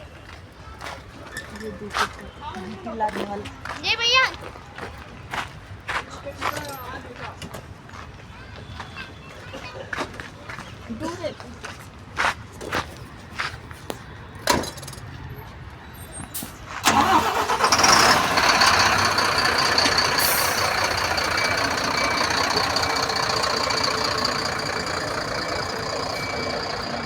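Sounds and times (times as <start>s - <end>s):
vehicle engine running: 16.8s - 27.0s.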